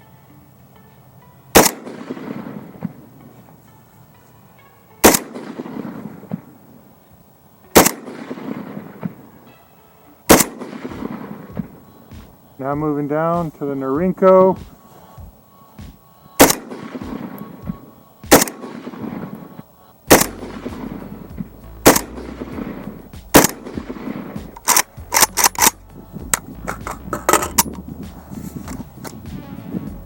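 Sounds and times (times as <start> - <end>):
quieter sharp cracks: 1.5 - 29.4
rifle shots with ringing tail: 1.6 - 3.1, 5.0 - 6.6, 7.7 - 9.5, 10.3 - 11.8, 16.4 - 17.6, 18.3 - 19.5, 20.1 - 27.8.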